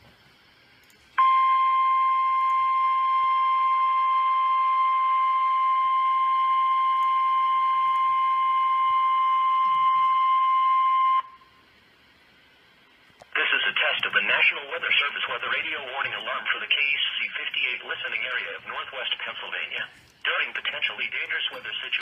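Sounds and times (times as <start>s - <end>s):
steady high alarm tone: 1.2s - 11.6s.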